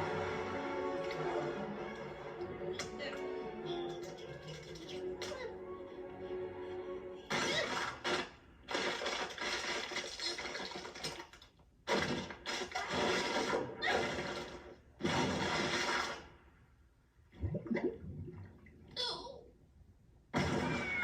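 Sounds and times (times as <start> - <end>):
cartoon ice cracking: 7.3 - 16.3, 20.4 - 21.0.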